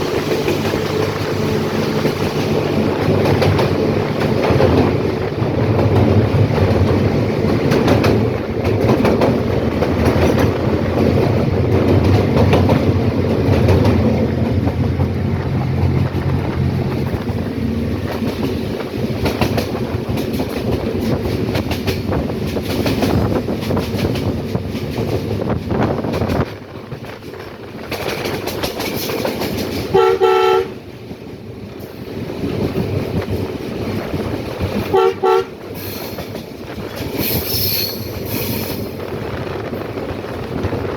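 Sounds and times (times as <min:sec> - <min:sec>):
train rumbling on track: 0:00.0 - 0:40.9
train horn blasts: 0:29.9 - 0:30.8, 0:34.8 - 0:35.7.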